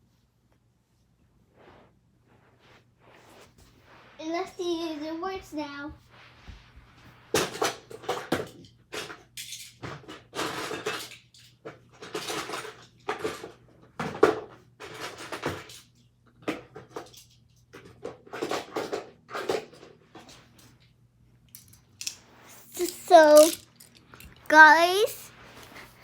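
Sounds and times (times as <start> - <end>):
toy cars and plastic track clattering: 7.3 - 20.7, 21.5 - 25.8.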